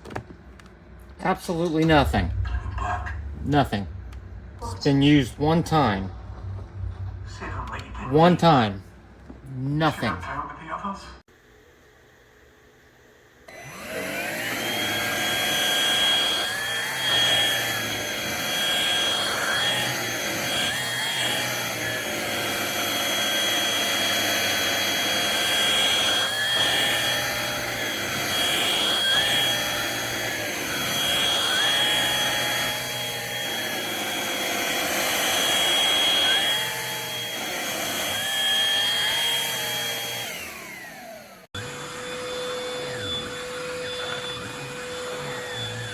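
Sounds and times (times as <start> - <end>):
hand vacuum motor whining: 13.5 - 45.9.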